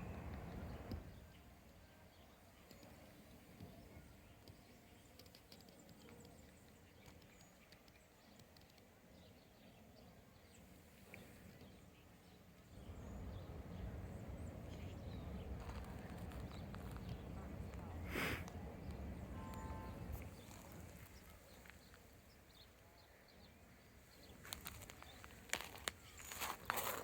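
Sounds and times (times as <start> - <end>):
footsteps crunching through snow: 24.4 - 27.0.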